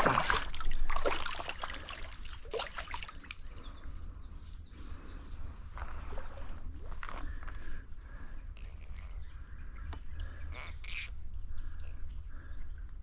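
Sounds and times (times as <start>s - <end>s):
sharp splashes: 0.0s - 3.6s
stream water trickling: 0.0s - 4.7s, 5.6s - 7.3s.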